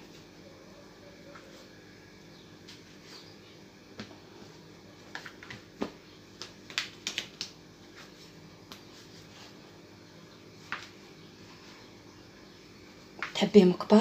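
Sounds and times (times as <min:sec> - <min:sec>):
hands kneading sticky dough: 0:03.9 - 0:09.9.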